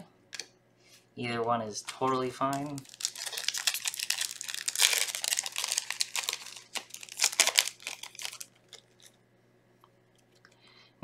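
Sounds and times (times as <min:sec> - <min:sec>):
foil wrapper crinkling and tearing: 0:01.9 - 0:09.2.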